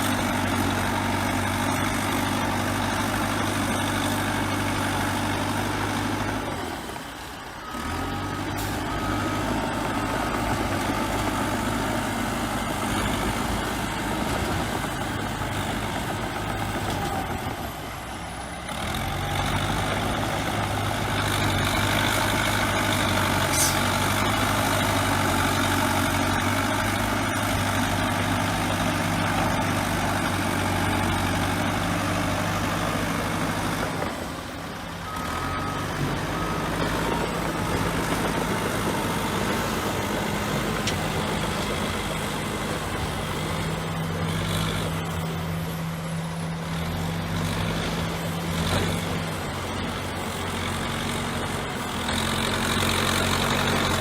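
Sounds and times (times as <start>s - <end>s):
bulldozer diesel engine running: 0.0s - 54.0s
reversing alarm beeping: 35.0s - 40.7s.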